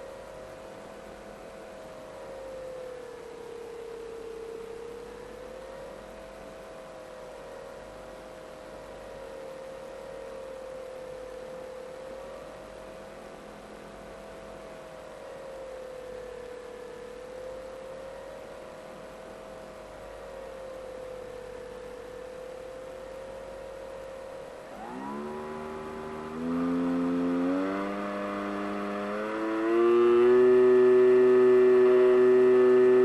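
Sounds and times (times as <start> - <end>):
model plane motor whine: 20.3 - 33.0.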